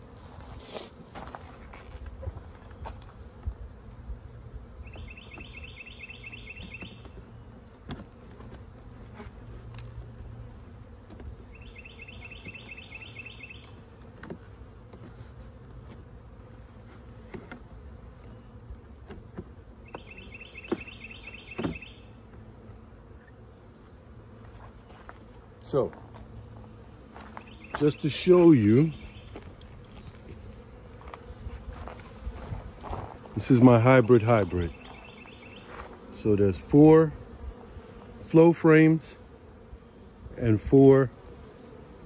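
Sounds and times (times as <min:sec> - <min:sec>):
honey bees buzzing: 0:00.0 - 0:42.0
bird trilling: 0:04.8 - 0:07.2, 0:11.5 - 0:13.8, 0:19.9 - 0:22.1, 0:28.8 - 0:29.4, 0:34.7 - 0:35.7.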